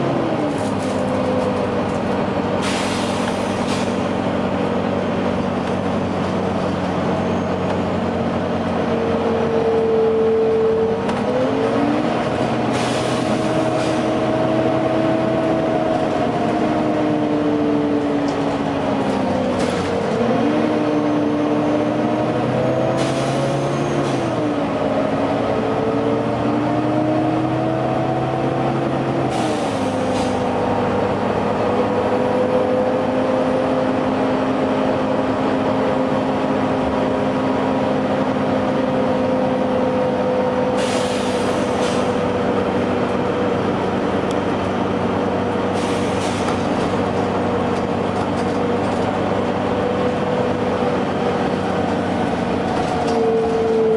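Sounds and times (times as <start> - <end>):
bus cooling fan whine: 0.0 - 53.9
bus engine running: 0.0 - 53.9
pneumatic air hisses: 2.6 - 4.1, 40.8 - 42.2, 45.8 - 46.6.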